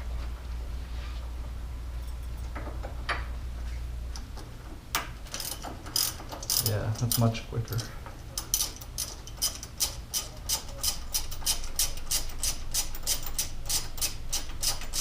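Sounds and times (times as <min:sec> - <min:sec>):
ratchet wrench clicking: 0:05.3 - 0:15.0.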